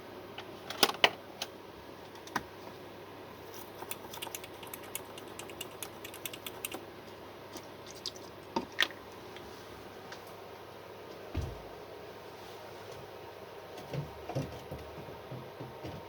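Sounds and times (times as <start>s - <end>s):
small tool clicking on circuit board: 3.8s - 6.8s.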